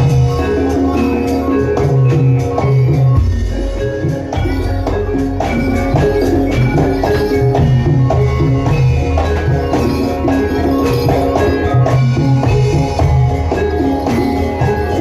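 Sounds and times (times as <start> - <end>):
low drum beat: 0.0 - 15.0
metallophones and gongs ringing: 0.0 - 15.0.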